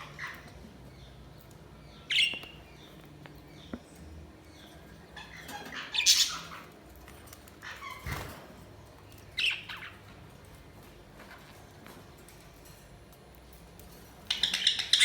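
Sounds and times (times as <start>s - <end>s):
budgerigars chirping and squawking: 0.0s - 1.2s, 1.9s - 3.8s, 4.5s - 10.6s, 14.2s - 15.0s.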